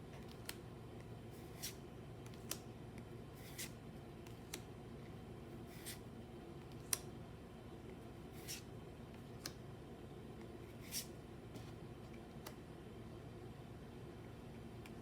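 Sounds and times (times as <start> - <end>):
faint steady hum: 0.0 - 15.0
cards swishing: 1.4 - 2.6, 3.4 - 4.6, 5.7 - 6.0, 8.4 - 8.7, 10.7 - 11.8.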